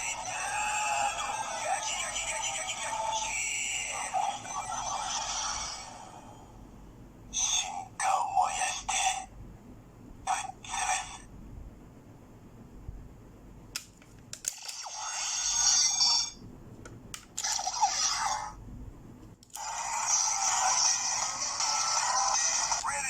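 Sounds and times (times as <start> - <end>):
tinny electronic toy sound effects: 14.5 - 16.4, 17.4 - 18.6, 19.5 - 23.0.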